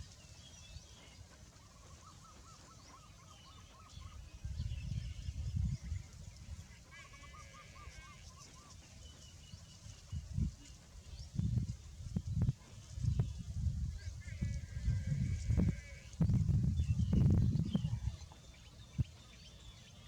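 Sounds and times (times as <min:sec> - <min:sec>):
low rumbling wind noise: 0:04.3 - 0:06.6, 0:10.1 - 0:19.3.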